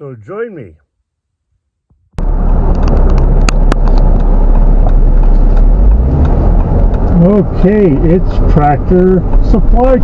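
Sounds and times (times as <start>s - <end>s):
vehicle engine and road rumble: 1.9s - 10.0s
sharp clicks: 2.2s - 7.2s.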